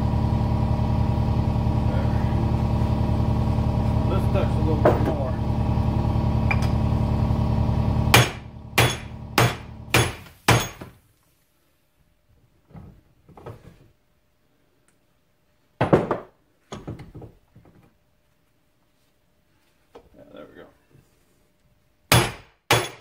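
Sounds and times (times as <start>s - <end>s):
steady low hum: 0.0s - 10.8s
hammer striking metal: 8.1s - 10.9s, 22.1s - 23.0s.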